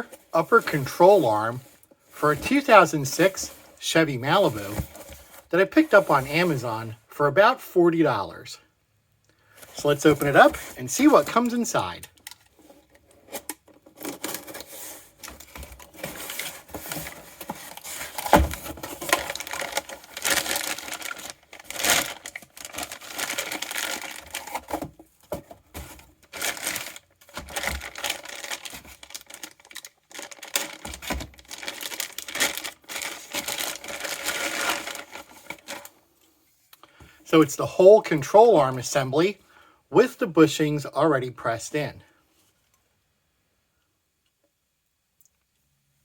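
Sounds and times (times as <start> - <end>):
packaging rustling and crinkling: 0.0 - 6.6, 9.6 - 35.9.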